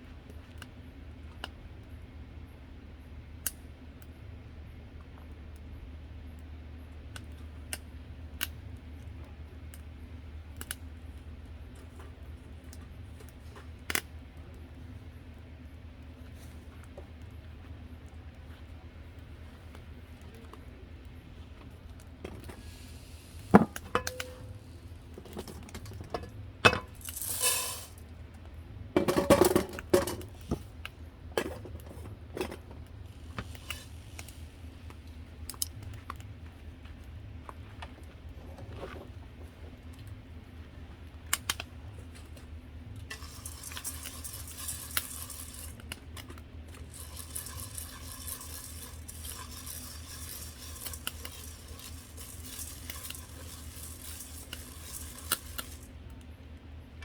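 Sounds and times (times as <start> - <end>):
steady high hiss: 22.4 - 25.2, 26.6 - 28.2
pots and pans clinking: 23.6 - 24.6, 25.3 - 28.0, 29.0 - 30.4, 43.1 - 45.8, 46.8 - 55.8.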